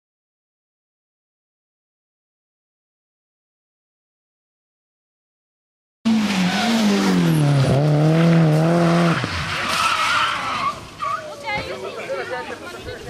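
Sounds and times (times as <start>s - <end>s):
rally car engine revving: 6.1s - 11.0s
tyres squealing and skidding: 6.1s - 12.3s.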